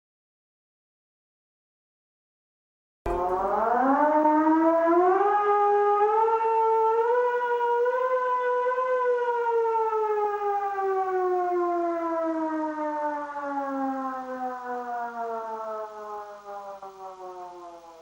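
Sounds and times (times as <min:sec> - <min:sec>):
siren winding down: 0:03.1 - 0:10.6.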